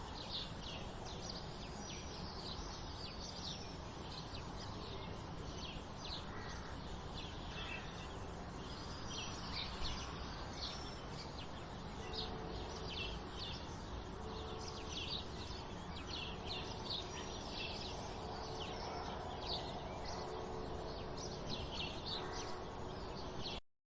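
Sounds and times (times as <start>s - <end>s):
small birds chirping: 0.0s - 23.6s.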